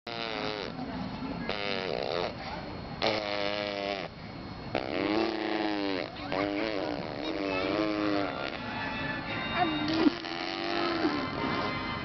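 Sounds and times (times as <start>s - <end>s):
baby making fart sounds: 1.5s - 2.4s, 3.0s - 4.1s, 4.8s - 8.6s, 9.9s - 11.2s.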